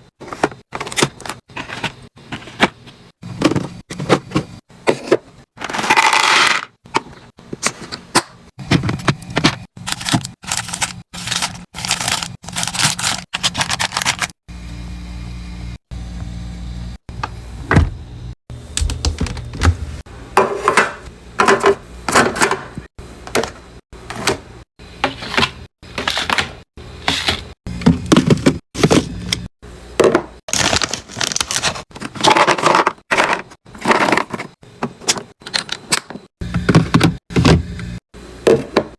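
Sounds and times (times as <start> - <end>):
steady low hum: 6.8 - 26.1
packaging crinkling: 9.8 - 14.4, 30.5 - 32.7.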